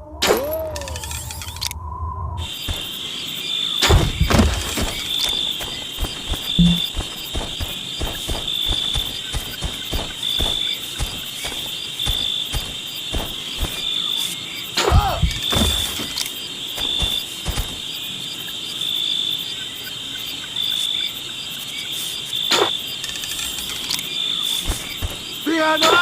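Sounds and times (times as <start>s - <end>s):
crickets chirping: 0.0s - 26.0s
low thuds: 3.8s - 13.9s.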